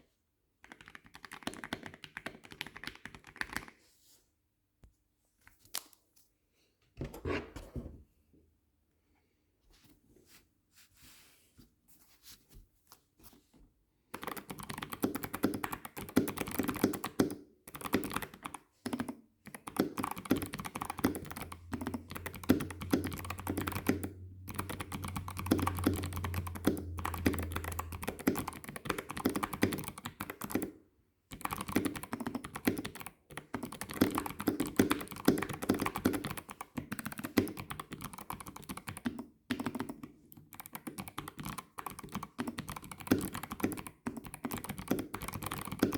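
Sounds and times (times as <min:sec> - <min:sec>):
mechanical keyboard typing: 0:00.6 - 0:03.7, 0:14.2 - 0:45.9.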